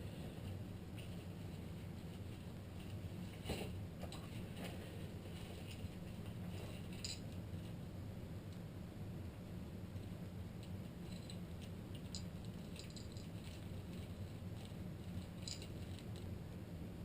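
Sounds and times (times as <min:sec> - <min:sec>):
low background hum: 0:00.0 - 0:17.0
small metal parts clinking: 0:06.8 - 0:07.4, 0:11.0 - 0:16.3.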